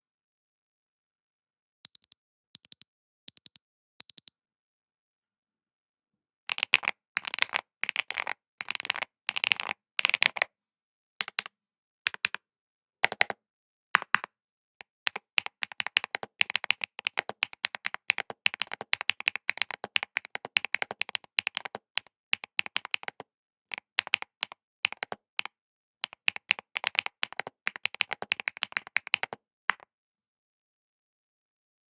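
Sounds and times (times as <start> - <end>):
typing on mechanical keyboard: 1.9 - 4.3, 6.5 - 10.4, 12.1 - 12.4, 13.0 - 13.4, 15.1 - 25.3, 26.0 - 29.8.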